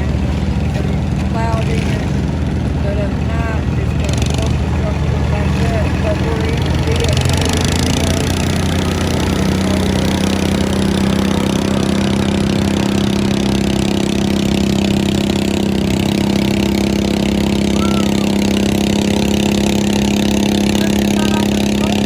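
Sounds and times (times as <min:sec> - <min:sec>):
lawn mower engine running: 0:00.0 - 0:22.0.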